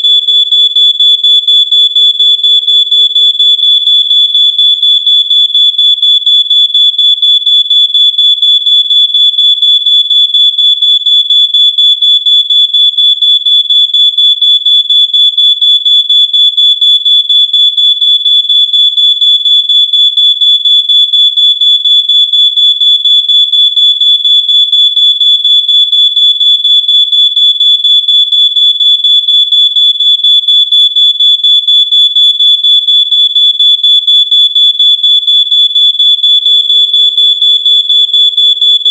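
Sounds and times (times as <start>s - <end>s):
smoke alarm beeping: 23.4s - 38.9s.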